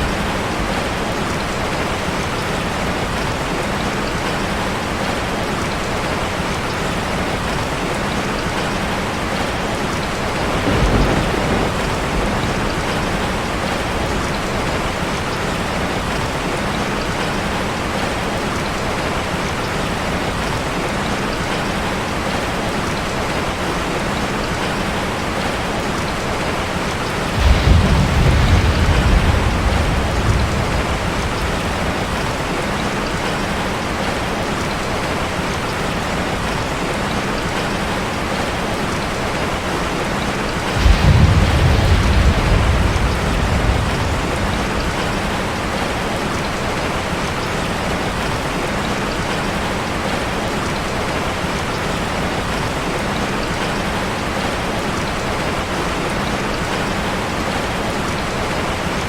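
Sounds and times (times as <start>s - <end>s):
rain falling on a street: 0.0s - 59.0s
low rumble of thunder: 8.4s - 16.3s, 26.5s - 33.7s, 40.5s - 46.9s.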